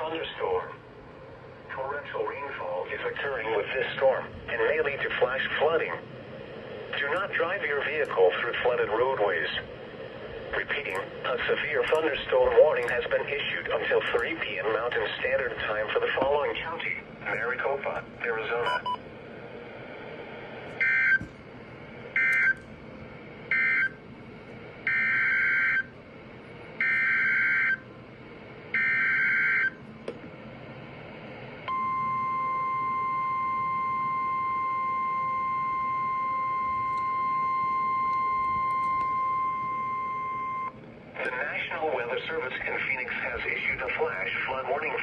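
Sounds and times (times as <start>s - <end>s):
steady warning alarm tone: 18.5s - 19.2s, 20.7s - 29.9s, 31.6s - 40.8s.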